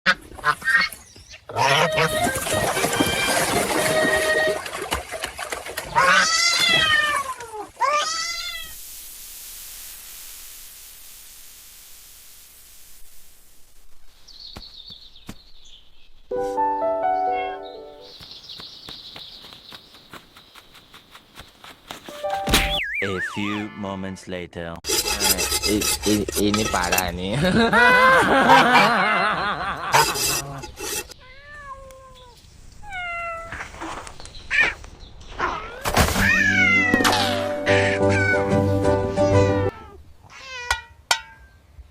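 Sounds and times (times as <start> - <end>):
cat meowing: 17.3 - 17.6, 31.2 - 33.6, 36.2 - 38.5, 39.3 - 40.9.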